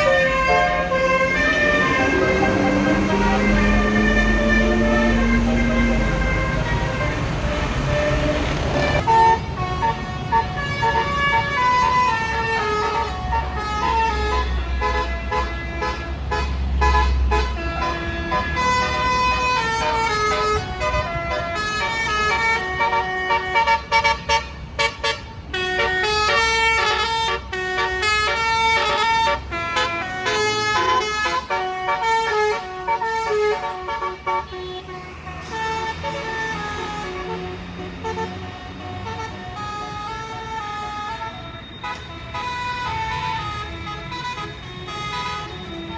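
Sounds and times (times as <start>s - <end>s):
engine rumble: 0.0s - 22.6s
bus horn playing a melody: 0.0s - 45.9s.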